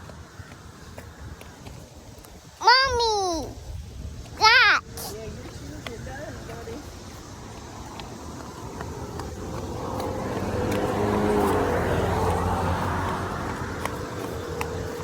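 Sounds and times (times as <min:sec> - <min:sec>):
car passing by: 0:07.6 - 0:15.0.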